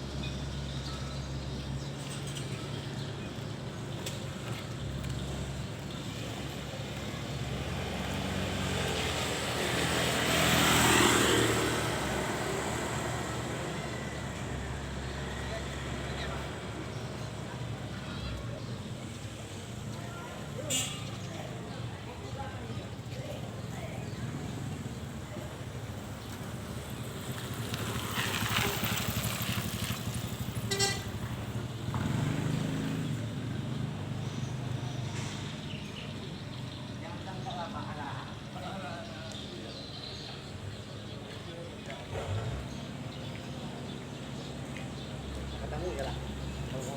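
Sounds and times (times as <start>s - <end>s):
vehicle passing by: 7.0s - 17.8s, 22.4s - 35.9s
short horn beep: 30.6s - 31.2s.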